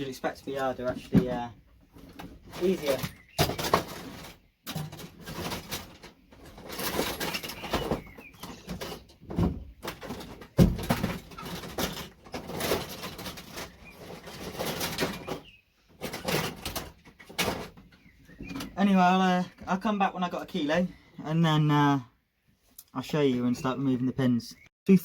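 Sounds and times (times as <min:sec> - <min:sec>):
metal and plastic clicks and scrapes: 0:00.8 - 0:18.8.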